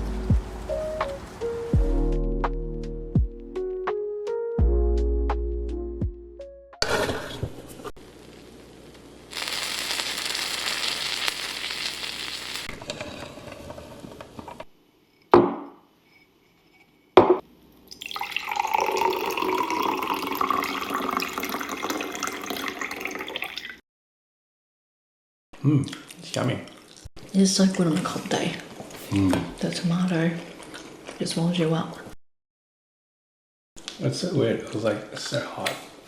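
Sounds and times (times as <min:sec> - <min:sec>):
food sizzling in a frying pan: 0:08.0 - 0:12.8.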